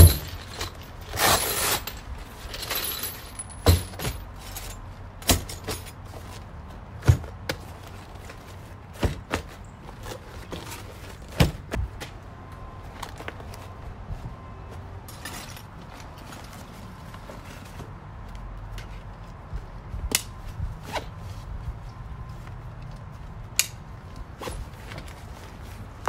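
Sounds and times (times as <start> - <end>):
metal tools clinking: 0.0 - 6.0, 15.1 - 16.6.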